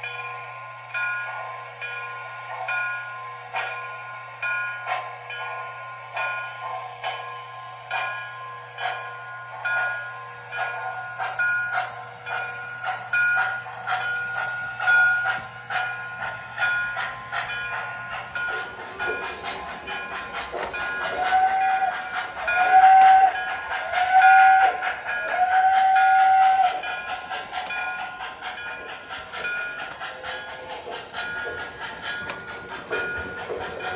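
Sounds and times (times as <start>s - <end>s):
steam locomotive chuffing: 0.0s - 33.9s
train whistle blasts: 21.1s - 26.9s.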